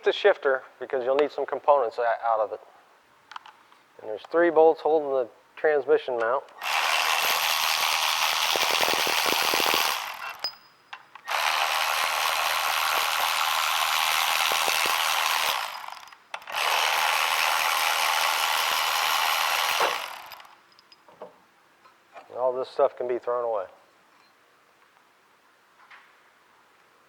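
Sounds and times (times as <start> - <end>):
power ratchet spinning bolts: 6.6 - 10.6, 11.2 - 20.6.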